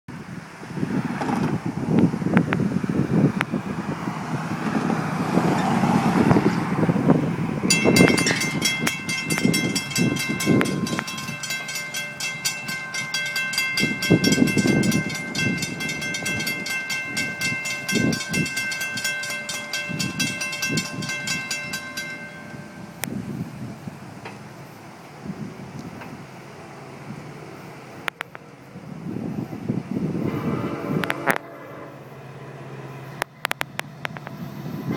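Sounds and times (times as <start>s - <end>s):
low rumble: 3.1s - 24.1s
railroad crossing bell ringing: 7.7s - 23.4s.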